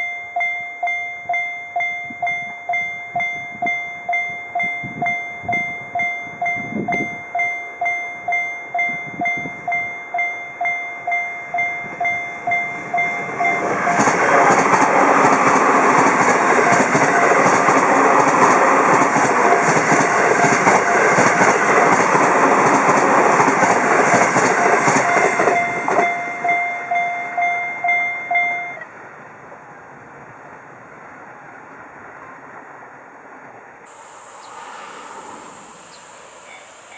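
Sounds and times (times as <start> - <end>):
railroad crossing bell ringing: 0.0 - 29.1
train passing loudly: 0.0 - 36.9.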